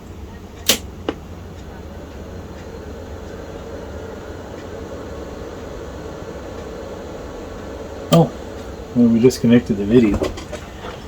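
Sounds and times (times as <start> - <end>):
computer low hum: 0.0 - 11.0
sharp switch clicks: 0.6 - 1.2.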